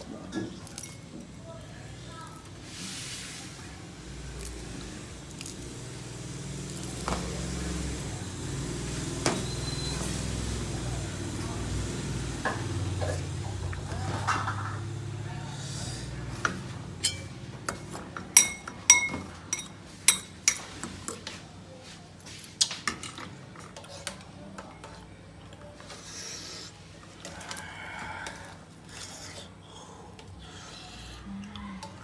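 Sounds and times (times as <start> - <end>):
utensils scraping dishes: 16.4 - 21.2
metal utensils clinking: 17.0 - 20.7.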